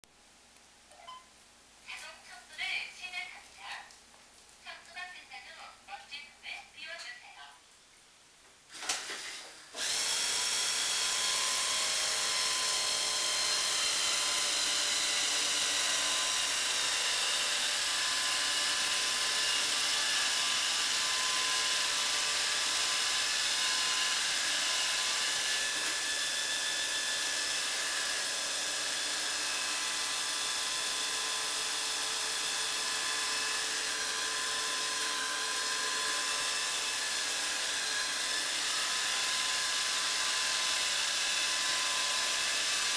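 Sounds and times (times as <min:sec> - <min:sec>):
robot vacuum cleaner whirring: 0:09.7 - 0:42.9.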